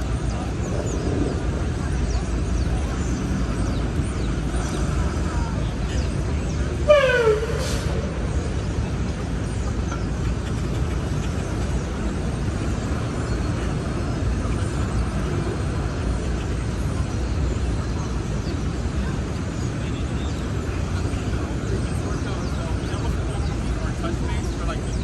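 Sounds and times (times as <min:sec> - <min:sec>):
city street traffic hum: 0:00.0 - 0:25.0.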